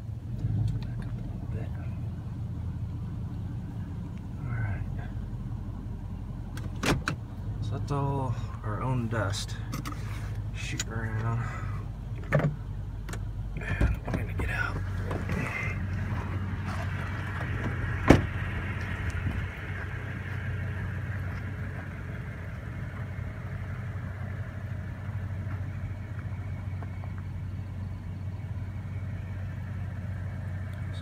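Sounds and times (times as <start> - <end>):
truck engine idling: 0.0 - 31.0
truck door slamming: 6.6 - 7.2, 17.3 - 18.6.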